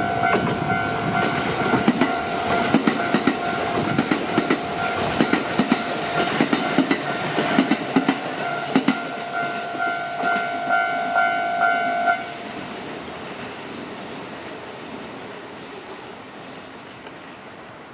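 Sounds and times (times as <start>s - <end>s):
level-crossing alarm ringing: 0.0s - 12.5s
train wheels clattering over rail joints: 0.4s - 9.6s.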